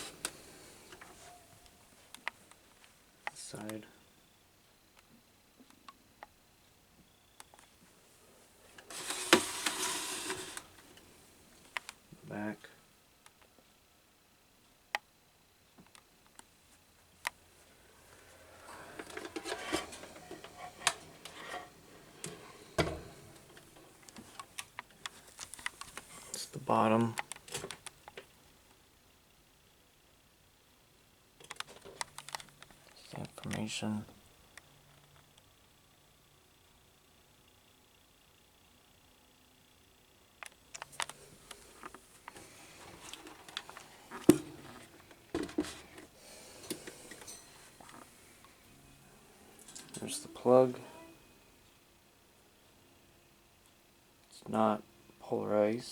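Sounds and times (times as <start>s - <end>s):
fan rubbing and scraping: 8.9s - 10.8s, 18.6s - 24.0s.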